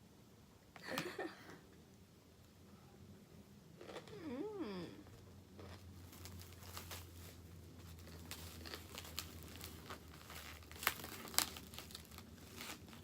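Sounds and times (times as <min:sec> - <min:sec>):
low steady hum: 0:00.0 - 0:13.0
food packaging crinkling: 0:05.5 - 0:13.0.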